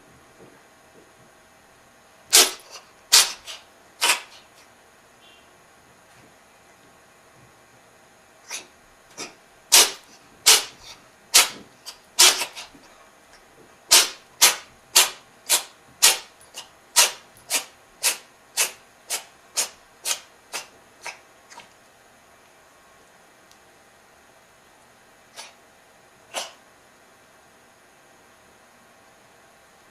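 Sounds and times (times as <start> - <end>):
cat sneezing and coughing: 2.3 - 4.6, 8.5 - 12.8, 13.9 - 21.7, 25.3 - 25.6, 26.3 - 26.6.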